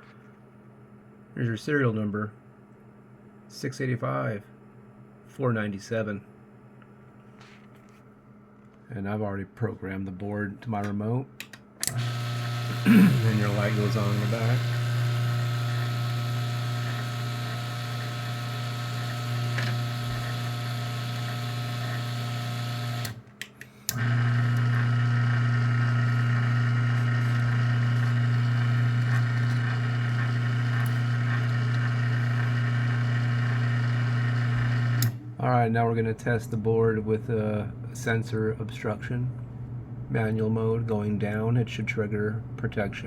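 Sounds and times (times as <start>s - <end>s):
garage door motor humming: 11.8s - 35.4s.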